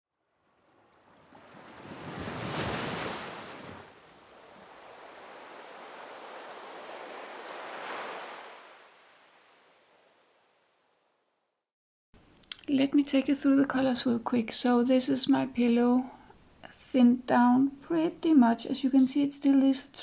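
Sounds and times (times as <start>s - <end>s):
ocean waves washing in: 0.3s - 10.7s.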